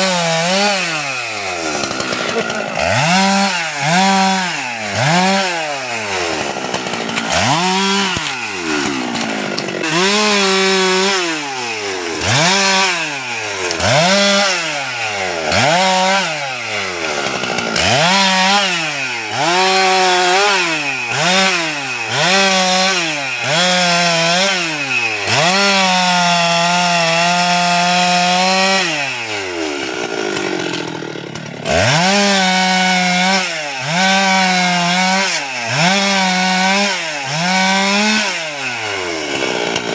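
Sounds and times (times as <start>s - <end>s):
chainsaw revving while cutting wood: 0.0s - 39.9s.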